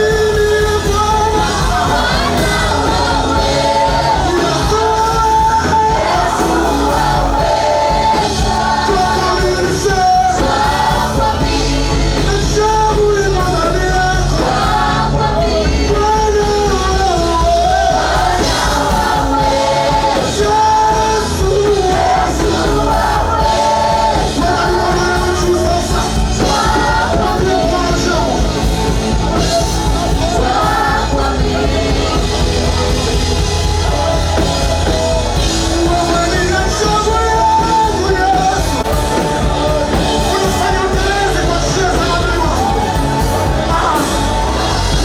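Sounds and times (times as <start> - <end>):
full band with steady bass: 0.0 - 45.0
voices singing worship song: 0.0 - 45.0.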